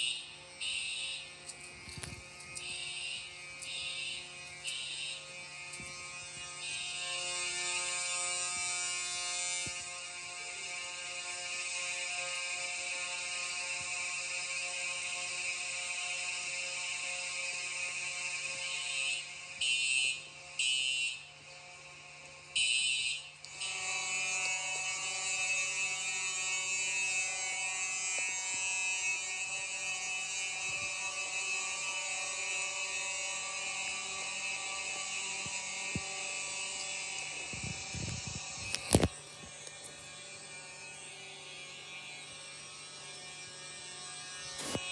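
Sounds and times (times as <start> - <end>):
fire alarm ringing: 0.0 - 5.4, 6.4 - 7.2, 18.7 - 21.3, 22.6 - 23.9
short alarm blasts: 0.0 - 5.4, 6.3 - 7.9, 18.8 - 21.3, 22.6 - 23.9.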